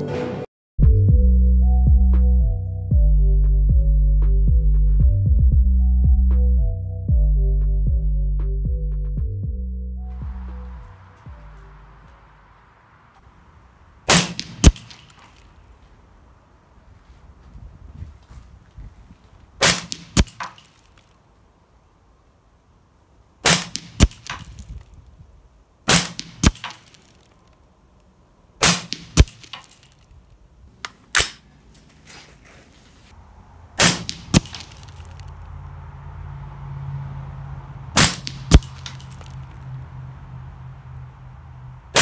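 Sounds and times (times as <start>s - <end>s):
sharp crack: 14.0s - 15.8s, 19.6s - 21.2s, 23.4s - 25.0s, 25.8s - 30.2s, 30.8s - 31.5s, 33.8s - 35.5s, 37.9s - 39.6s
suppressed gunshots: 14.1s - 15.4s, 19.6s - 20.7s, 23.4s - 24.6s, 25.9s - 27.0s, 28.6s - 29.7s, 33.8s - 34.8s.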